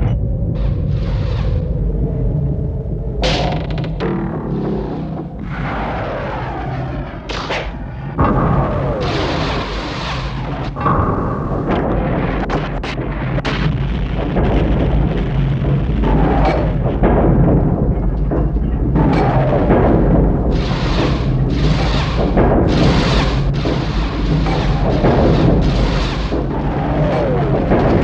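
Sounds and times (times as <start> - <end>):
heavy rumble: 0.0 - 28.0
booms and crashes: 3.2 - 28.0
sharp hits: 3.2 - 28.0.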